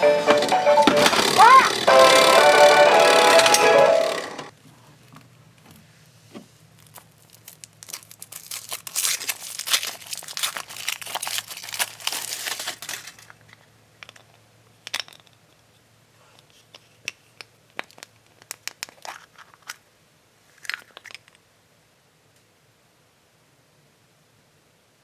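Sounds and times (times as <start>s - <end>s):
wrapper crinkling and tearing: 6.8s - 13.3s.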